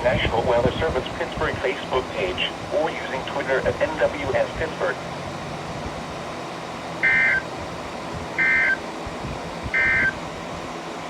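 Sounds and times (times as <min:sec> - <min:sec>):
buzzy digital data tones: 0:07.0 - 0:07.4, 0:08.4 - 0:08.8, 0:09.8 - 0:10.2.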